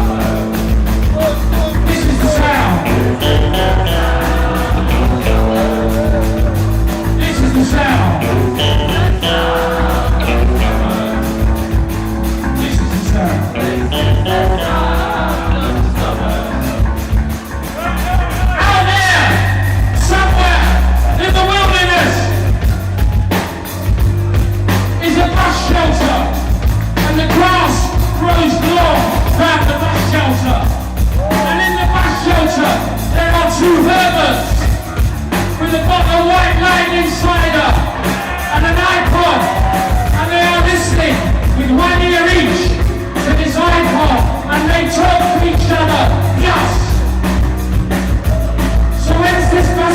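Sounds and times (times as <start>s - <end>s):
person singing: 0.0s - 11.8s, 12.5s - 17.2s, 36.4s - 47.2s
driving drum beat: 0.0s - 49.9s
punk rock band playing live: 0.0s - 49.9s.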